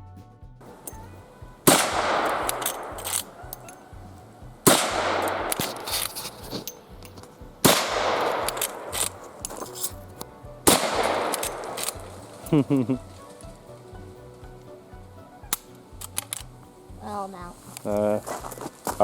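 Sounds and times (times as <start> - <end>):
faint background music: 0.0 - 19.0
rifle shots with echo: 1.6 - 4.0, 4.6 - 6.4, 7.6 - 9.9, 10.6 - 12.5.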